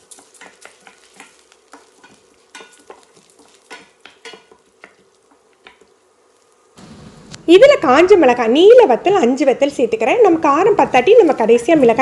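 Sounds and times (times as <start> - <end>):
seeds scraped in a pan: 0.0 - 6.8
light sizzle: 0.0 - 12.0.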